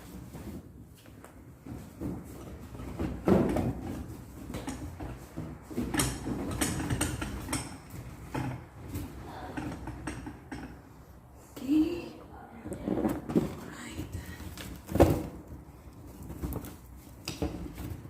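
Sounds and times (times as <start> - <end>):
rustling of handled things: 0.0 - 18.0
objects knocking and clicking: 1.6 - 10.8.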